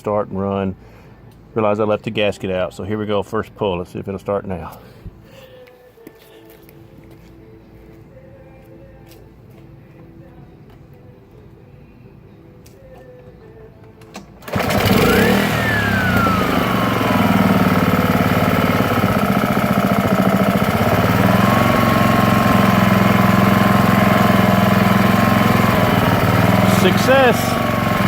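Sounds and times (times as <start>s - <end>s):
lawn mower engine running: 14.4s - 28.0s.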